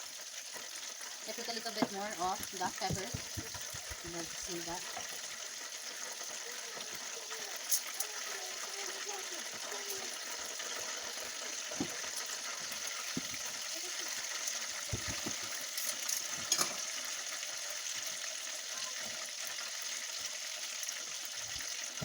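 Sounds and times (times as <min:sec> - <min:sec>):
rice sizzling in a hot pan: 0:00.0 - 0:22.0
utensil knocking and scraping pan: 0:01.7 - 0:04.5, 0:14.9 - 0:16.8.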